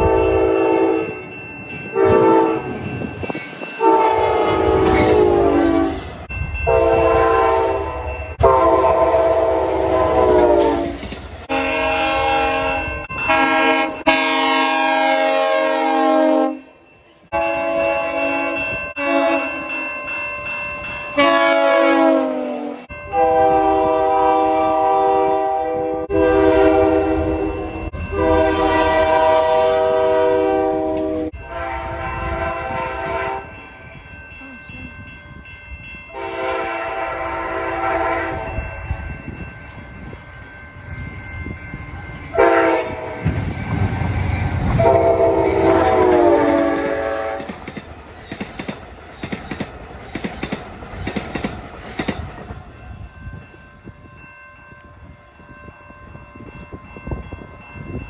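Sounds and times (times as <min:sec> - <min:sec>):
train horn blasts: 0:00.0 - 0:01.2, 0:01.9 - 0:02.9, 0:03.8 - 0:19.6, 0:21.2 - 0:33.6, 0:36.1 - 0:38.8, 0:42.3 - 0:43.4, 0:44.7 - 0:47.7
moving train rumble: 0:00.0 - 0:58.0.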